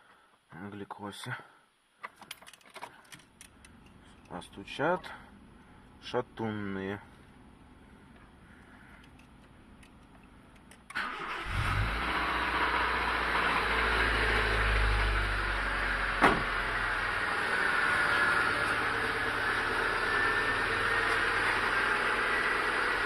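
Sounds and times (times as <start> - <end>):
car engine starting and idling: 7.2 - 23.0.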